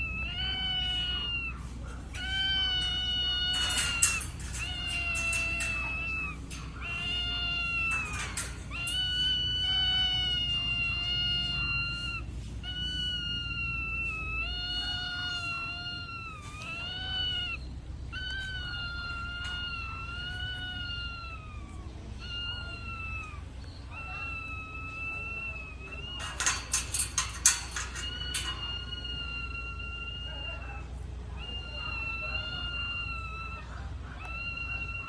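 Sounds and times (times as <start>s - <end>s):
parrot whining calls: 0.0s - 35.0s.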